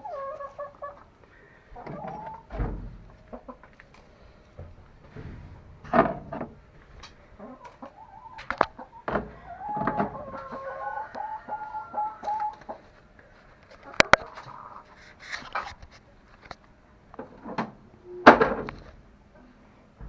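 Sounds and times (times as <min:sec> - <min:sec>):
hens clucking: 0:00.0 - 0:15.8
sudden knocks: 0:01.9 - 0:03.2.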